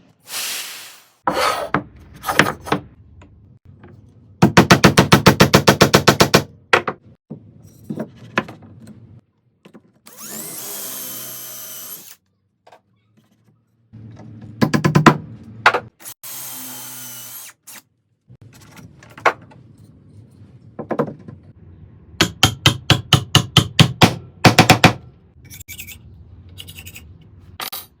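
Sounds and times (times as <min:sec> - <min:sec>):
power drill boring into wood: 0:10.1 - 0:12.2, 0:16.2 - 0:17.6.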